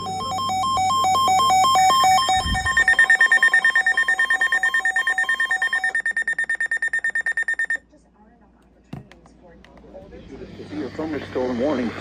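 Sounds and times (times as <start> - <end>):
high rapid beeping: 0.0 - 7.8.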